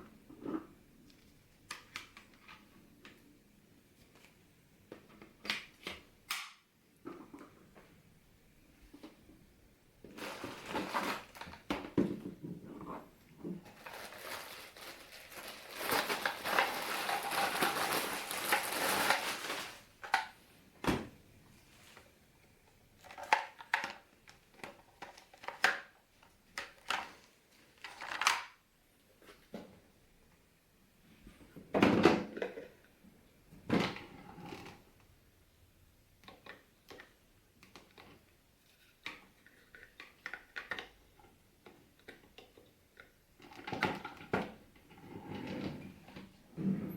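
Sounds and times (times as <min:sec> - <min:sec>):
crinkling and rustling: 0:10.0 - 0:22.2, 0:23.0 - 0:29.9.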